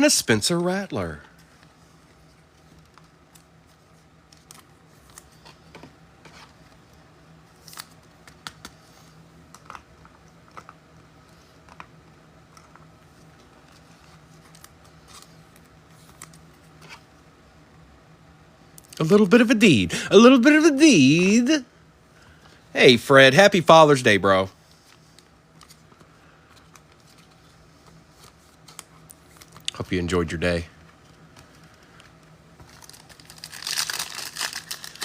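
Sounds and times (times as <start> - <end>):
low steady hum: 0.0 - 35.0
trading cards being handled: 30.8 - 35.0.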